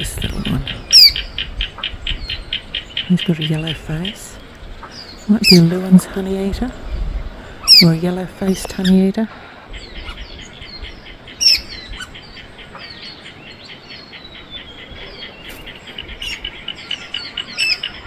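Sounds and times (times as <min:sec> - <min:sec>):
small birds chirping: 0:00.0 - 0:18.0
bird downward-sweeping call: 0:07.6 - 0:08.0.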